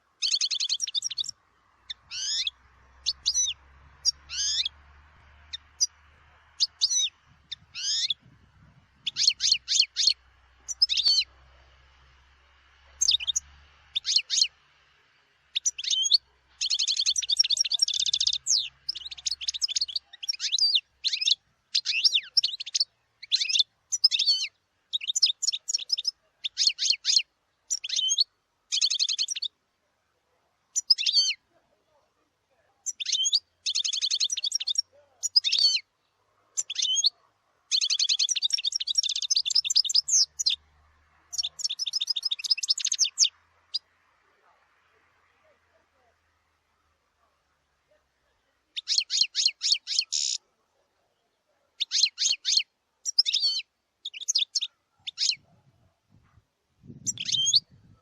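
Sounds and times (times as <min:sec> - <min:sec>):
finch twittering song: 0:00.1 - 0:14.6, 0:15.5 - 0:29.6, 0:30.8 - 0:31.5, 0:32.8 - 0:44.0, 0:48.7 - 0:50.4, 0:51.8 - 0:56.2, 0:56.8 - 0:58.0.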